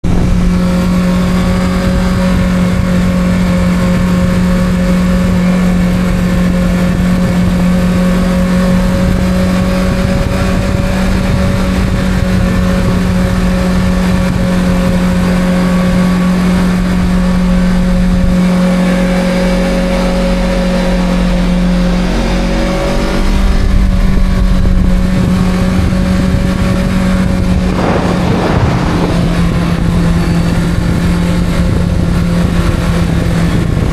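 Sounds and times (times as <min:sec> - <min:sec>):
motorcycle engine at steady revs: 0:00.0 - 0:33.9
brief rush of noise: 0:27.5 - 0:31.0.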